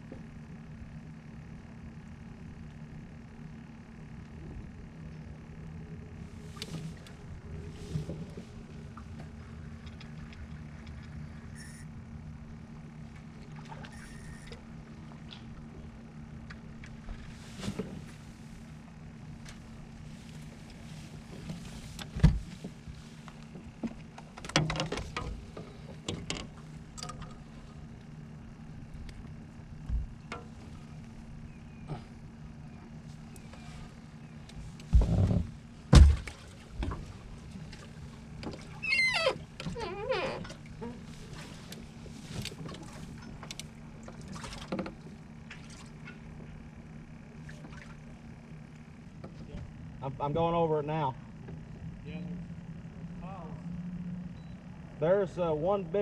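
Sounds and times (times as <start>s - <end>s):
boat motor humming: 0.0s - 56.0s.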